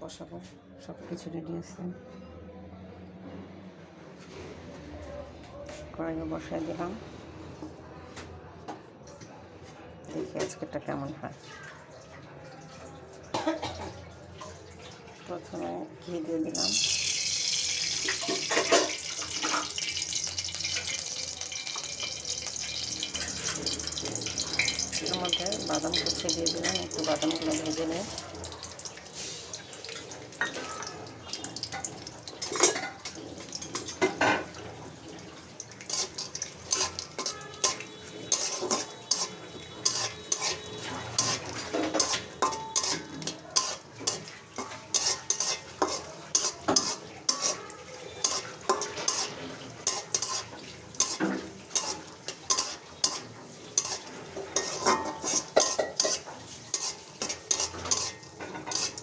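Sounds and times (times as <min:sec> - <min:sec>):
light sizzle: 0:16.4 - 0:59.0
spatula scraping a pan: 0:28.5 - 0:59.0
spatula clinking against pan: 0:35.7 - 0:59.0.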